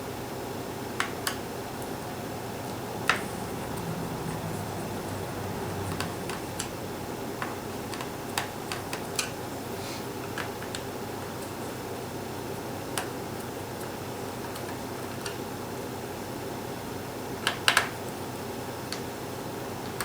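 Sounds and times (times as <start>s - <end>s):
steady low hum: 0.0s - 8.4s.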